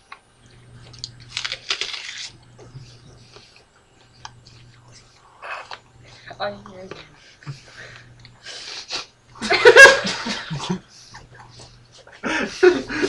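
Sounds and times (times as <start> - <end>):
breathing: 7.2 - 8.7
loud burst of laughter: 9.4 - 10.8.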